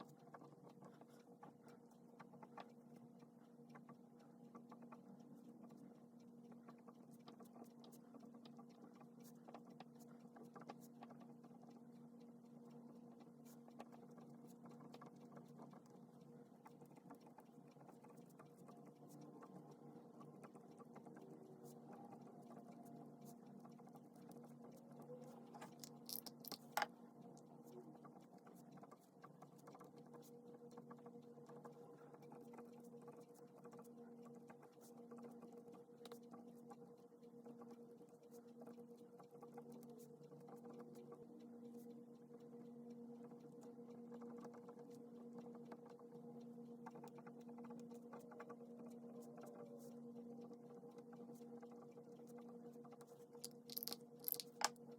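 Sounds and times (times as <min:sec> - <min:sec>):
low electrical hum: 0:00.0 - 0:29.2.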